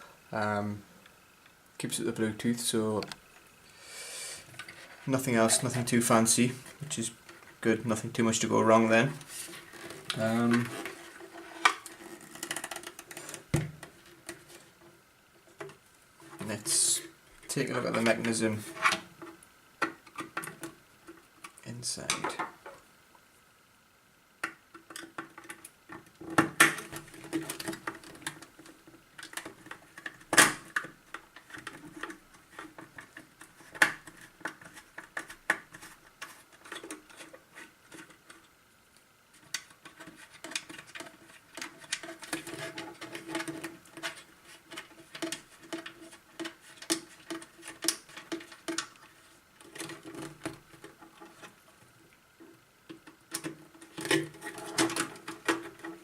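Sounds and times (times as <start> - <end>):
small parts clicking and scraping: 9.1 - 14.8, 24.7 - 51.7.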